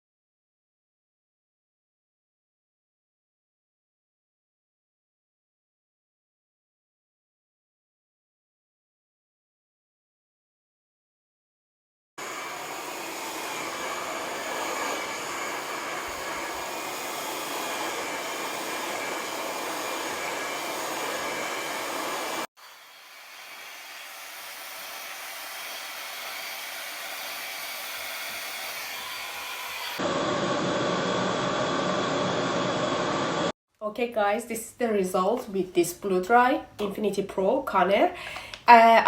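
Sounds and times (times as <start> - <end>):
hair dryer running: 12.2 - 33.6.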